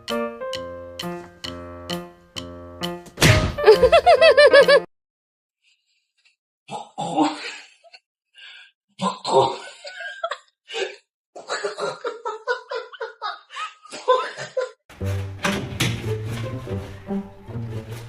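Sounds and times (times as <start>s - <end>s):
person laughing: 3.6s - 4.9s, 9.6s - 10.5s, 11.4s - 14.8s.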